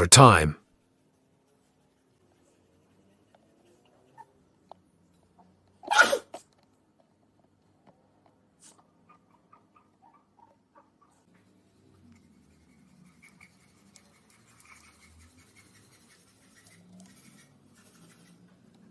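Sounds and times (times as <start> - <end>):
faint scratching and rubbing: 0.7 - 4.3, 11.2 - 18.9.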